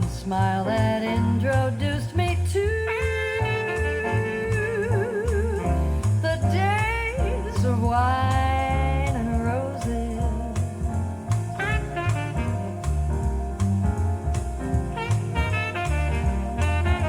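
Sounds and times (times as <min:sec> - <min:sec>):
walking bass line: 0:00.0 - 0:17.0
drum strokes: 0:08.3 - 0:17.0
lead instrument melody: 0:10.4 - 0:17.0.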